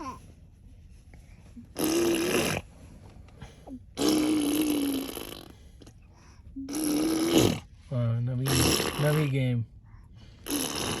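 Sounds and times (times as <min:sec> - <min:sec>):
child imitating car engine: 0:04.0 - 0:05.5, 0:06.6 - 0:07.6.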